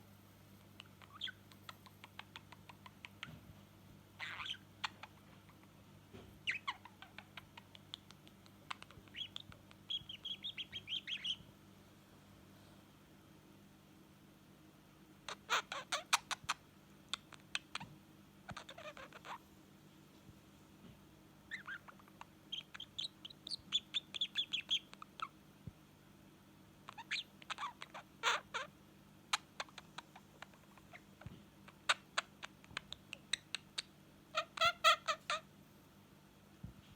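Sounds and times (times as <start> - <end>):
budgerigar chattering: 0.9 - 3.4, 4.2 - 5.2, 6.4 - 11.4, 15.3 - 17.9, 18.5 - 19.4, 21.5 - 25.4, 26.9 - 28.7, 31.7 - 35.4.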